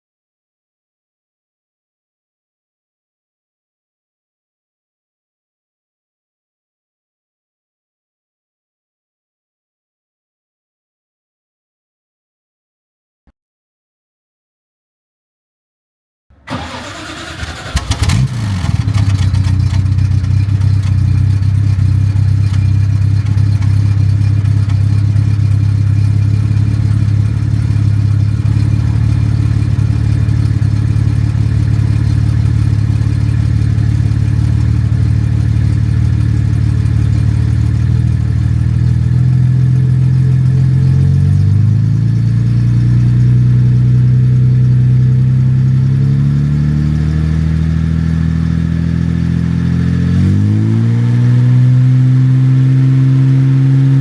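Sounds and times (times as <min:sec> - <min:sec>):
car engine idling: 0:16.3 - 0:46.3.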